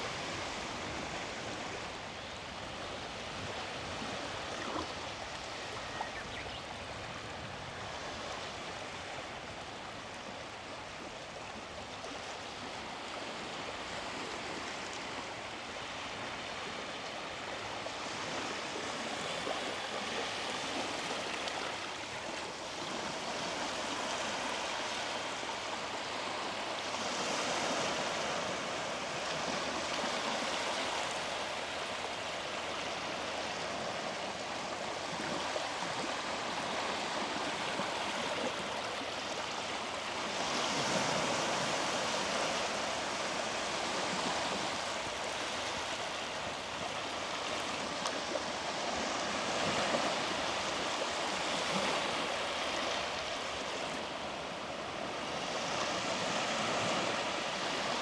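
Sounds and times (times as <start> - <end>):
small waves breaking on beach: 0.0 - 58.0.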